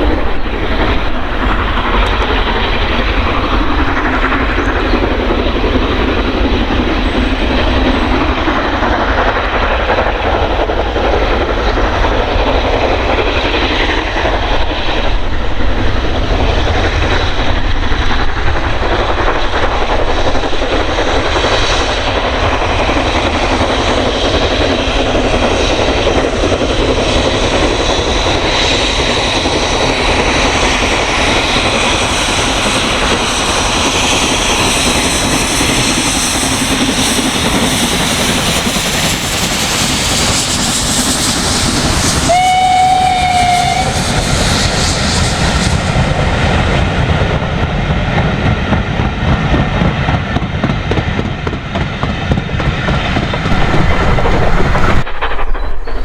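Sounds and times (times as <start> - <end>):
steam train passing: 0.0 - 56.0
locomotive whistle: 41.1 - 44.8.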